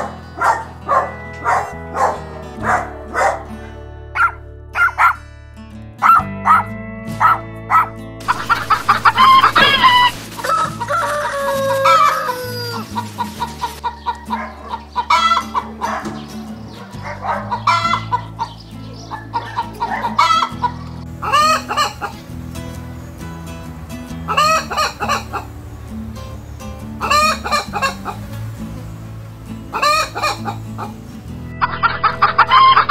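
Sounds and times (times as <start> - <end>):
background music: 0.0 - 32.9
rooster crowing: 8.2 - 13.4, 31.6 - 32.9
hens clucking: 8.2 - 22.3, 23.8 - 25.8, 26.4 - 28.4, 29.6 - 32.9.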